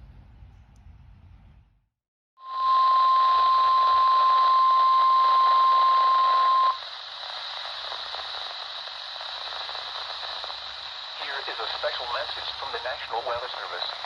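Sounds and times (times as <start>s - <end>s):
steady warning beep: 2.5s - 6.9s
radio static hiss: 2.5s - 14.0s.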